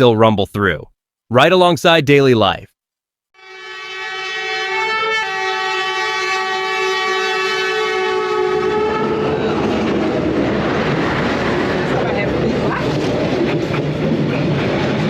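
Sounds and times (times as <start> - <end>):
train horn two-note blast: 3.4 - 9.9
train rumbling past: 3.6 - 15.0.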